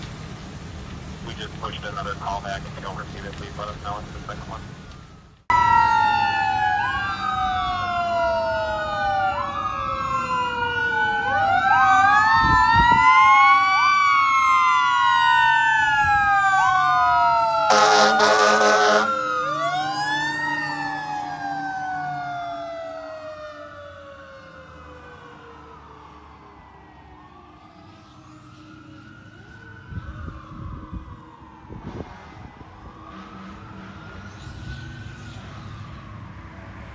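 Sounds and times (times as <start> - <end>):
fire engine sirens wailing: 1.3 - 36.9
air horn blast: 17.7 - 19.6.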